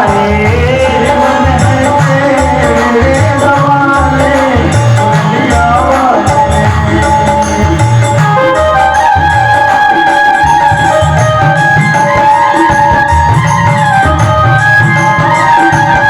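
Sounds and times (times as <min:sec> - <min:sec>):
person singing: 0:00.0 - 0:08.7
steady drum beat: 0:00.0 - 0:16.0.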